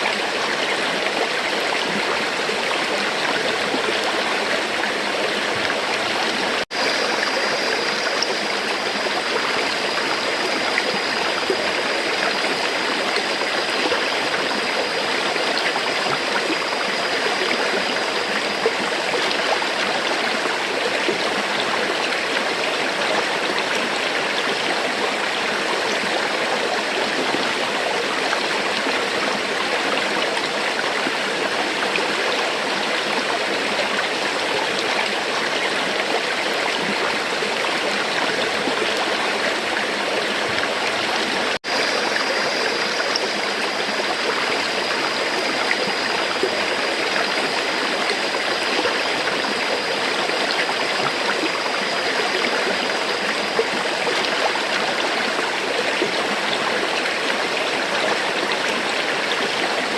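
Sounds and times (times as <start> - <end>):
river water flowing: 0.0 - 59.9.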